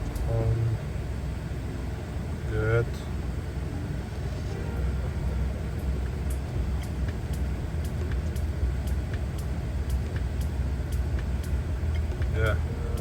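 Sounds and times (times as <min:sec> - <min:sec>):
car engine idling: 0:00.0 - 0:13.0
light ticking: 0:04.7 - 0:13.0.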